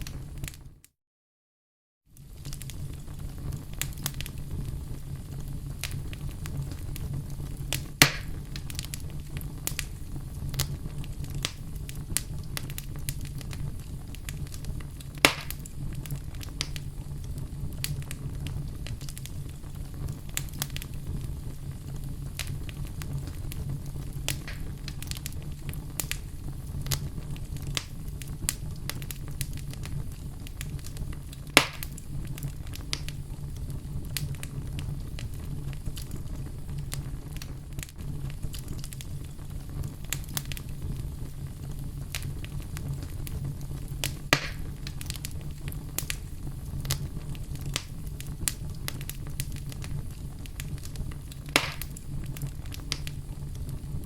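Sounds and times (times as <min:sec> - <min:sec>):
fire crackling in fireplace: 0:00.0 - 0:00.8, 0:02.1 - 0:54.0
loud sharp pops: 0:07.7 - 0:08.4, 0:15.2 - 0:15.7, 0:24.3 - 0:24.8, 0:31.6 - 0:32.0, 0:44.0 - 0:44.8, 0:51.5 - 0:52.0.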